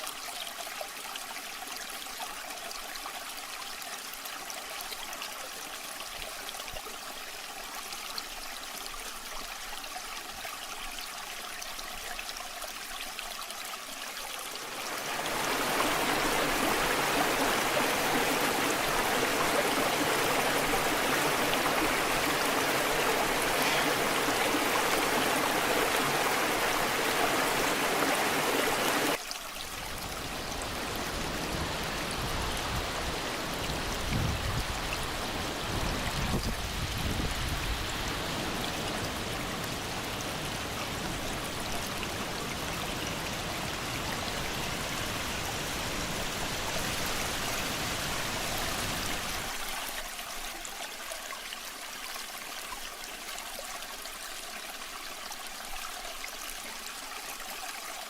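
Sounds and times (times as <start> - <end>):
waterfall rushing: 14.6 - 29.2, 29.8 - 49.7.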